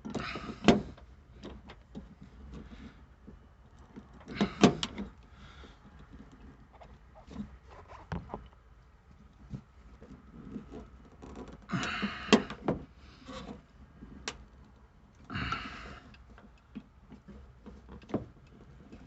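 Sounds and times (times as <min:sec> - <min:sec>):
scraping and handling noise: 0:00.0 - 0:11.7.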